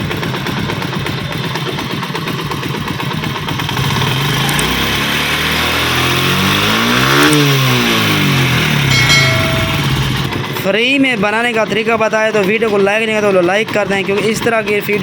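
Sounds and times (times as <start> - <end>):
motorcycle engine idling and revving: 0.0 - 15.0.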